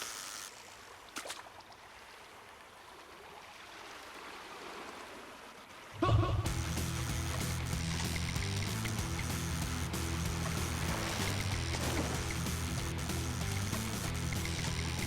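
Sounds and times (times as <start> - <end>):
flowing water rushing: 0.0 - 15.0
music: 6.0 - 15.0.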